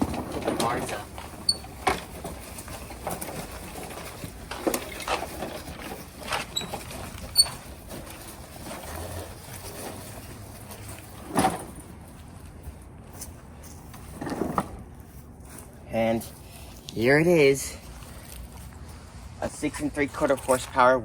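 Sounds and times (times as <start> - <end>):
heavy clunk: 0.0 - 12.0
lawnmower parts clicking and knocking: 0.0 - 15.8.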